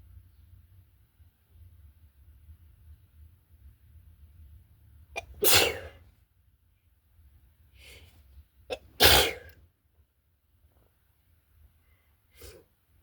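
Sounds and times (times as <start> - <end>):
person sneezing: 5.2 - 6.0, 8.7 - 9.6
soft breath: 11.7 - 12.8.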